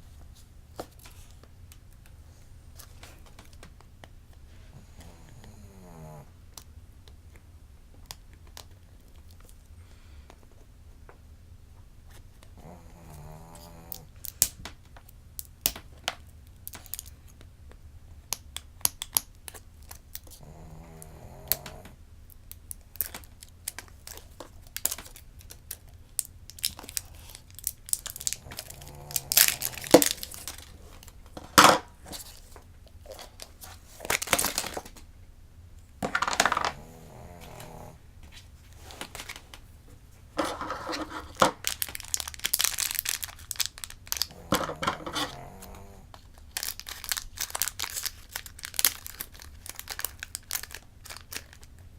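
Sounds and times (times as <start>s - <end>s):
plastic packaging crinkling and tearing: 22.3s - 31.2s, 32.1s - 35.0s, 40.4s - 51.8s.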